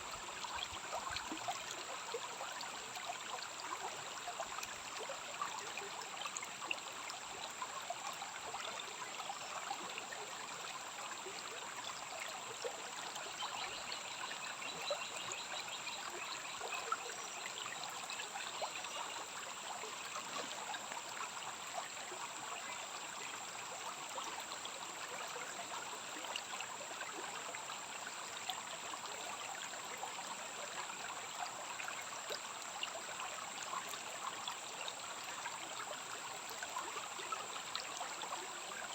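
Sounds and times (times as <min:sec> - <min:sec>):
stream trickling over stones: 0:00.0 - 0:38.9.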